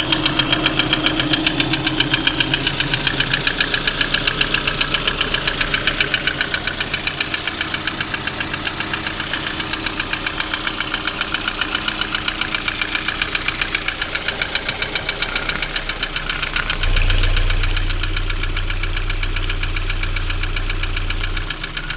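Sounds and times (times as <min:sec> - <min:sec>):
car engine idling with knocking: 0:00.0 - 0:21.9
low hum: 0:14.0 - 0:21.9.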